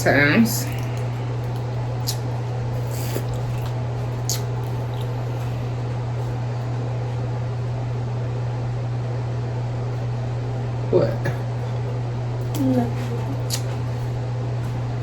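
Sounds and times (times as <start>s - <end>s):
steady low hum: 0.0s - 15.0s
eating clicks and smacks: 0.6s - 5.7s, 12.4s - 14.2s.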